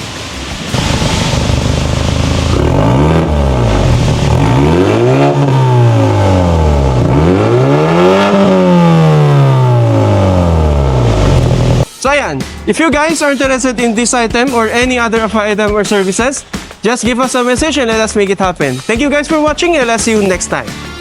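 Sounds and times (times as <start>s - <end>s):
car exhaust revving: 0.0s - 11.9s.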